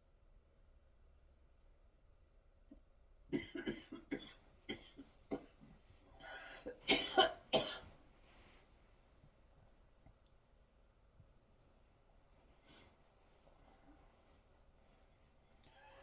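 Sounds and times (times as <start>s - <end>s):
person coughing: 3.4s - 5.5s, 6.2s - 7.9s.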